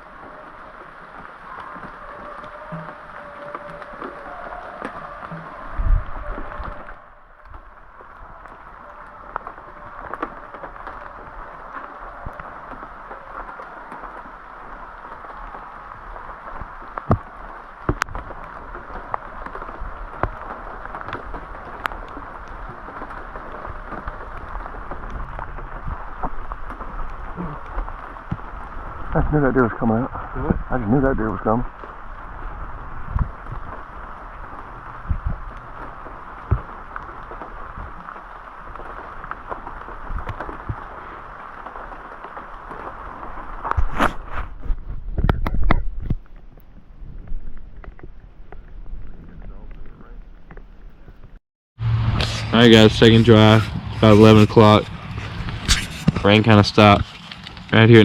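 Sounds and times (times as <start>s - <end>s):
water drips: 0.0s - 43.8s
sharp taps of raindrops: 0.0s - 51.3s, 54.5s - 58.0s
steady rain falling: 0.0s - 58.0s.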